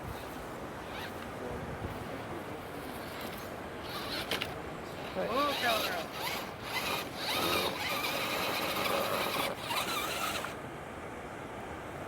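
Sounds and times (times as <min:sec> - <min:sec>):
rc car motor and gears whining: 0:03.2 - 0:04.4, 0:05.0 - 0:10.6.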